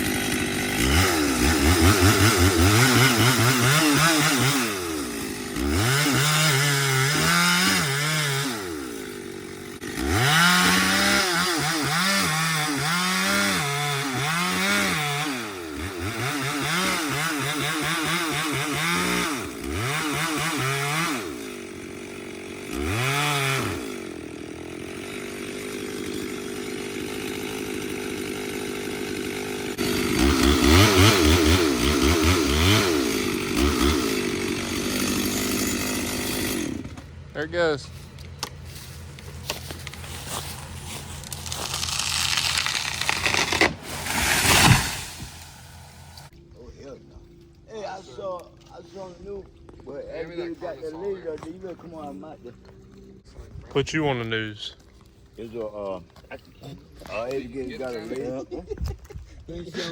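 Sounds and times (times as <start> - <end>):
chainsaw revving and idling: 0.0 - 46.4.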